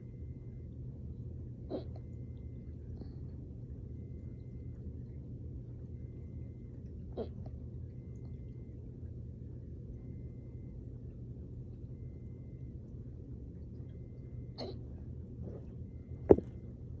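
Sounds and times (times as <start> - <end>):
muffled hiccups: 1.6 - 2.1, 7.1 - 7.5, 14.5 - 14.9.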